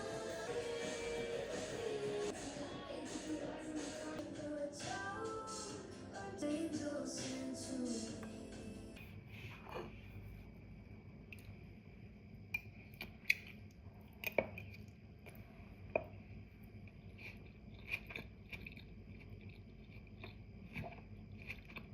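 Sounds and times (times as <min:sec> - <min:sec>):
faint hum: 0:00.0 - 0:21.9
soft chewing: 0:12.6 - 0:21.9.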